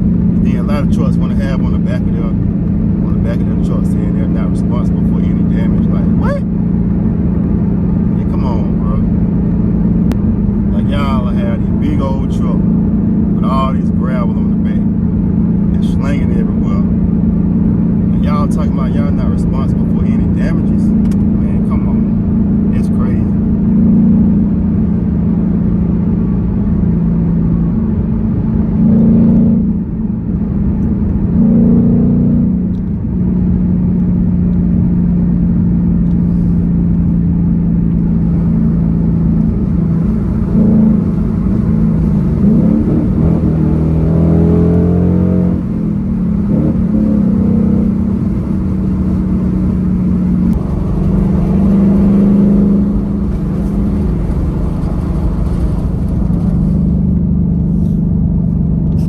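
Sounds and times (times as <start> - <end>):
car engine accelerating: 0.0 - 59.0
tyre and road noise: 20.0 - 59.0.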